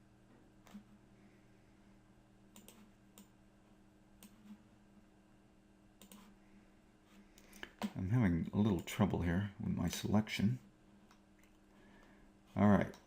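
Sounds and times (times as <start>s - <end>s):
low electrical hum: 0.0s - 13.0s
computer mouse clicks: 2.5s - 3.3s, 4.2s - 4.6s, 6.0s - 6.3s.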